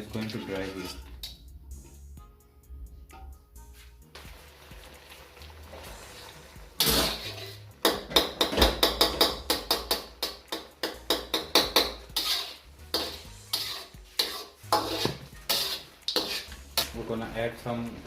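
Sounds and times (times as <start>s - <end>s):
metal spatula scraping a pan: 0.0s - 2.0s, 5.8s - 8.4s, 9.6s - 17.2s.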